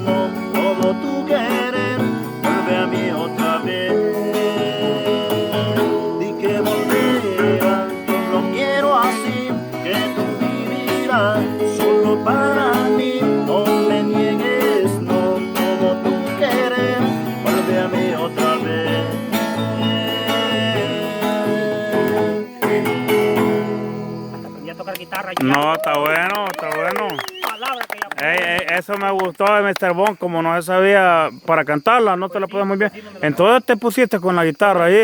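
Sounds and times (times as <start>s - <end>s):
guitar music: 0.0s - 25.4s.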